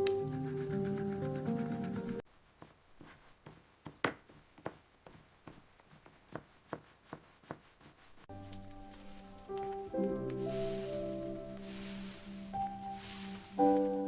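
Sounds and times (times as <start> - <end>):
background music: 0.0 - 2.2, 8.3 - 14.0.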